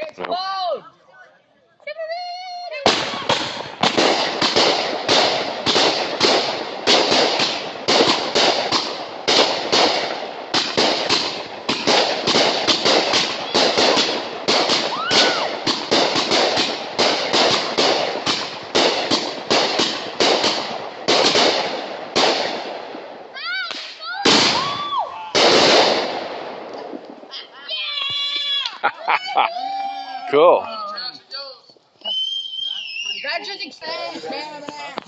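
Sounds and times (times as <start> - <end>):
fireworks bangs and crackle: 2.8 - 28.6
firework whistle: 32.0 - 33.4.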